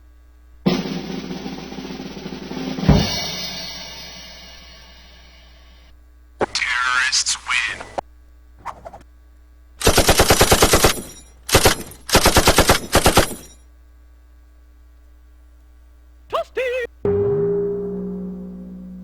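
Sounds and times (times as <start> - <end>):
machine-gun automatic fire: 9.8 - 13.5.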